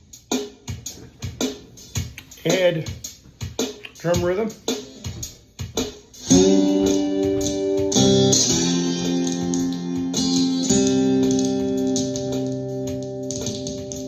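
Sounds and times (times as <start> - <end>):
drum machine beat: 0.9 - 8.8
acoustic guitar chords strummed: 6.3 - 12.0.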